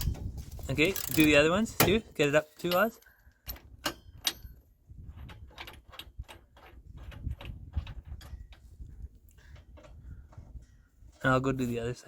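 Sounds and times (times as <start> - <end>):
ratchet wrench clicking: 0.9 - 1.4.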